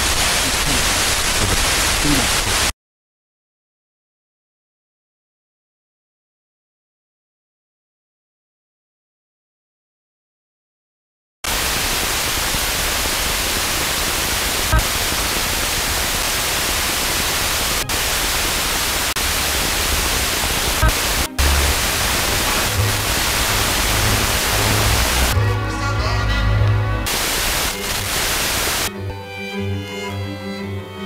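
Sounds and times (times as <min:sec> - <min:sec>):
radio static hiss: 0:00.0 - 0:02.7, 0:11.5 - 0:25.4, 0:27.0 - 0:28.9
distant radio music: 0:13.2 - 0:28.9.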